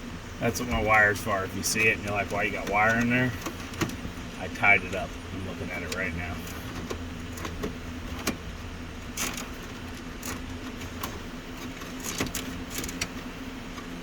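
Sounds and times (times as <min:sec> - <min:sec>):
steady low hum: 0:00.0 - 0:14.0
plastic trim clicking and rattling: 0:01.8 - 0:04.1, 0:09.1 - 0:14.0.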